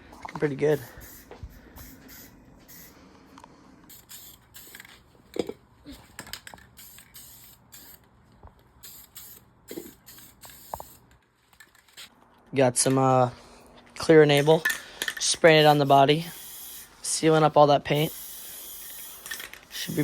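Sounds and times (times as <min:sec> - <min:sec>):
spray can hissing bursts: 0:00.7 - 0:03.0, 0:03.9 - 0:05.0, 0:06.7 - 0:08.0, 0:08.8 - 0:11.1, 0:15.5 - 0:16.9, 0:17.9 - 0:20.0.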